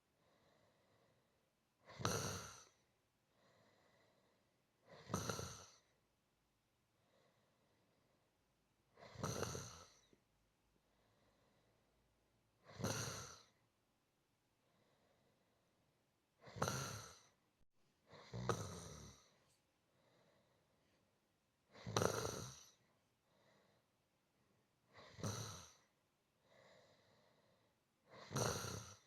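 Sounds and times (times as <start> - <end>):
faint breaths: 0.0 - 1.5, 2.3 - 6.0, 6.9 - 12.1, 14.6 - 15.9, 18.0 - 29.0
person snoring: 1.8 - 6.0, 8.9 - 10.2, 12.6 - 13.6, 16.4 - 17.4, 18.1 - 19.4, 21.7 - 23.8, 24.9 - 25.9, 26.6 - 29.0.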